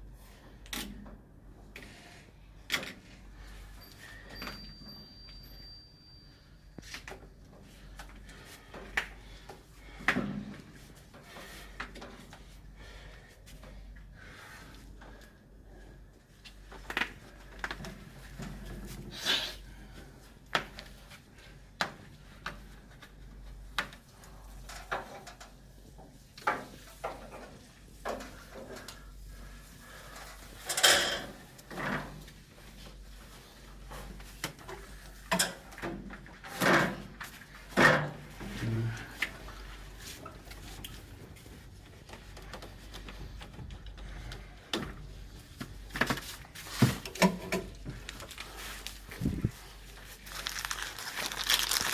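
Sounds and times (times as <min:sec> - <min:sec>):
tools and metal hardware clattering: 0:30.6 - 0:32.1.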